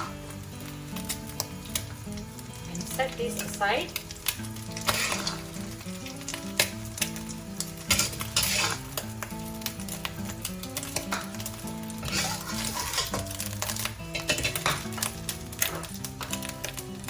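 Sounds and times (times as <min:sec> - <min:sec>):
spatula scraping a wok: 0:00.0 - 0:00.2, 0:04.2 - 0:05.6, 0:07.8 - 0:09.0, 0:11.0 - 0:16.3
background music melody: 0:00.0 - 0:17.0
eggs sizzling in hot oil: 0:00.0 - 0:17.0.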